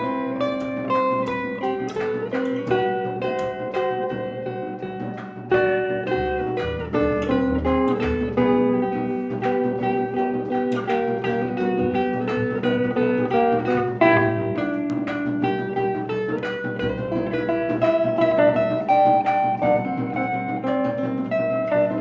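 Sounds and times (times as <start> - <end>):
plucked guitar notes and chords: 0.0 - 22.0
deep bass note: 6.2 - 8.8.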